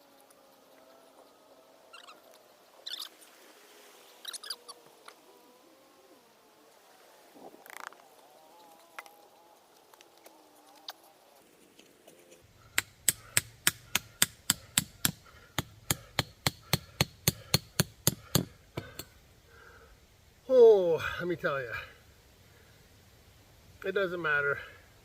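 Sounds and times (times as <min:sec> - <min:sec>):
tent stakes hammered into ground: 0:12.6 - 0:19.2.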